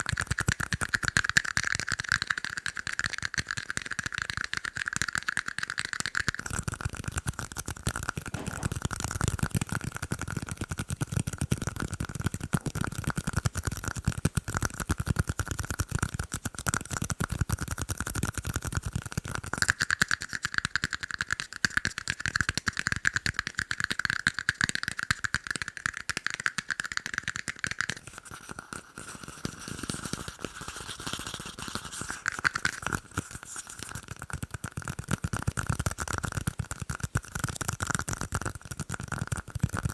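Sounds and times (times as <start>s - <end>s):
low thud: 8.3s - 9.4s
fast tapping on small cups: 29.6s - 39.9s.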